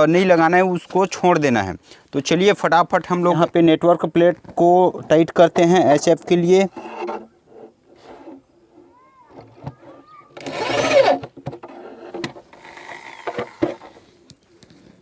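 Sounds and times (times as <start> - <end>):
power screwdriver whir: 9.8 - 13.9.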